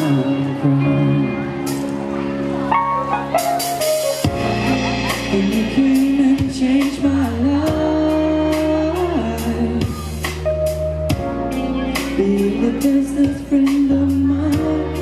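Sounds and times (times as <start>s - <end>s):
man singing: 0.0s - 1.7s, 5.0s - 10.4s, 11.1s - 15.0s
pop backing track with drums: 0.0s - 15.0s.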